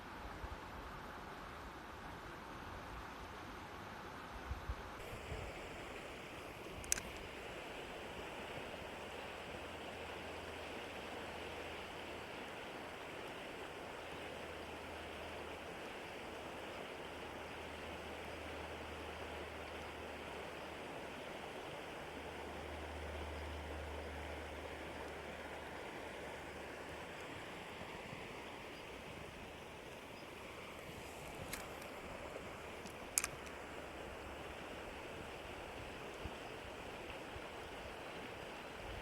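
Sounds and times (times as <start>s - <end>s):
flowing river water: 0.0s - 39.0s
sharp clicks: 6.8s - 7.2s, 31.5s - 31.9s, 32.8s - 33.6s.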